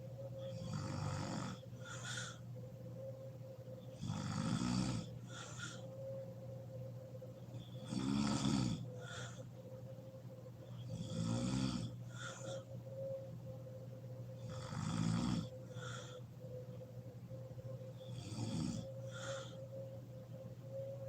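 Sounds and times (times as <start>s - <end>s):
woman snoring: 0.4s - 2.4s, 4.0s - 5.8s, 7.6s - 9.4s, 10.8s - 12.7s, 14.4s - 16.2s, 18.0s - 19.6s.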